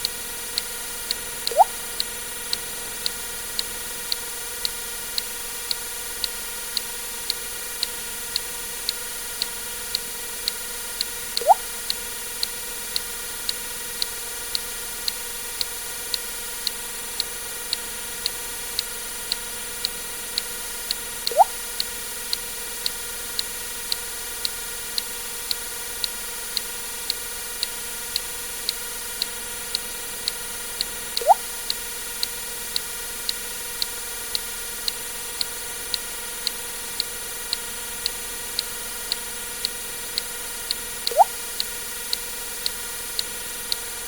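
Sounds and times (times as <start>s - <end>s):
water drip plink: 1.5s - 2.1s, 11.4s - 11.6s, 21.3s - 21.5s, 31.2s - 31.5s, 41.1s - 41.4s
steady ticking: 11.4s - 11.6s, 21.3s - 21.5s, 29.7s - 31.8s, 38.0s - 41.7s
electronic hum: 21.3s - 21.6s, 31.0s - 31.6s, 41.0s - 41.7s.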